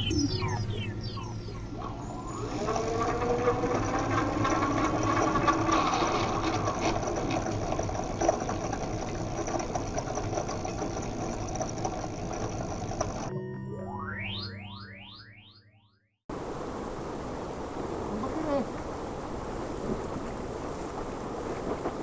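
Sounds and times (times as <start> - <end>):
electric hub motor grinding whine: 0.0 - 13.6.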